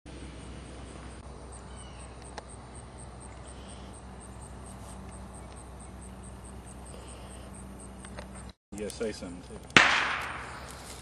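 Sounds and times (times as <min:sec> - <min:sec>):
low hum: 0:00.1 - 0:08.6.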